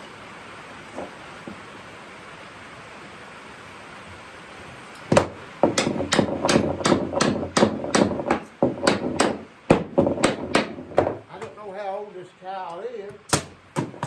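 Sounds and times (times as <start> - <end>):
hammer knocking wooden parts: 5.1 - 11.6, 13.3 - 14.0.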